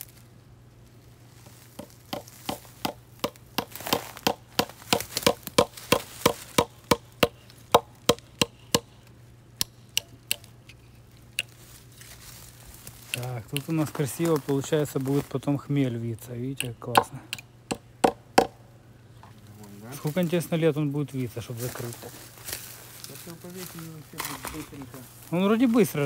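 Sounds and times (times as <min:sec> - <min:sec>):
sharp knocks: 0:01.8 - 0:09.0, 0:16.6 - 0:18.6.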